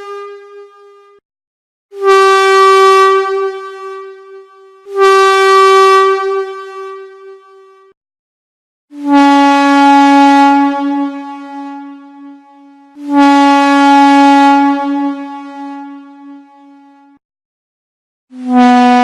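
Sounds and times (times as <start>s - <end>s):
train whistle blasts: 4.9s - 6.8s, 9.0s - 11.9s, 13.0s - 16.4s, 18.3s - 19.0s.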